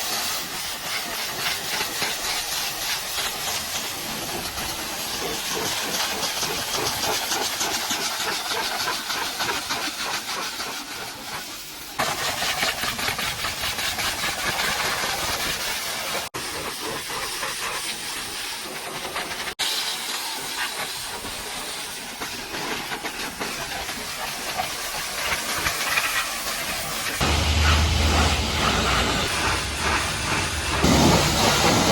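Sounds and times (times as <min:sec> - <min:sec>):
pressure washer spraying: 0:00.0 - 0:31.9.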